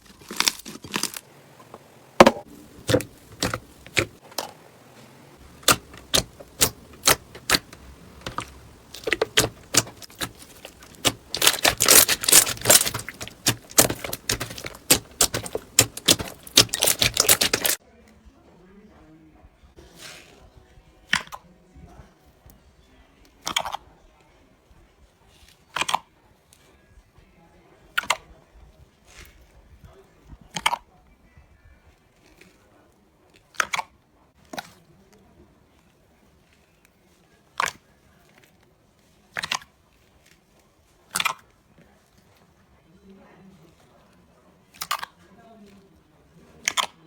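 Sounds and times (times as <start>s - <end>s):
slime crackling clicks: 5.6s - 17.8s.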